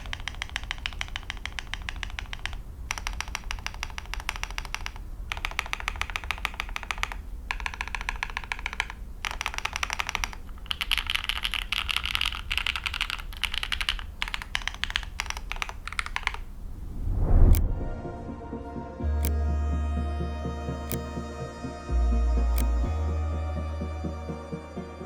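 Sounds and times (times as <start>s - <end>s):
rapid mechanical keyboard typing: 0.0s - 16.6s.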